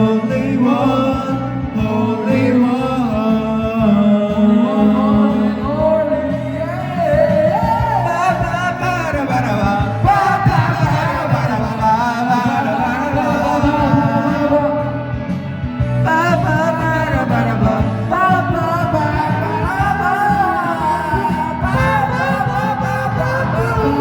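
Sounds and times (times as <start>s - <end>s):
karaoke backing track: 0.0s - 24.0s
person singing: 0.0s - 24.0s.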